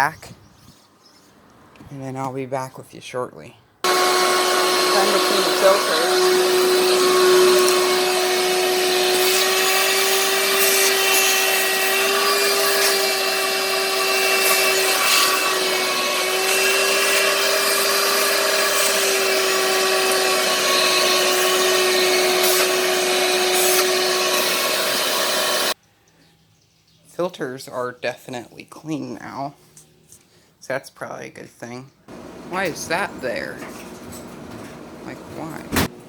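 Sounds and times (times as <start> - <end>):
shop vac humming: 3.8 - 25.8, 32.1 - 36.0.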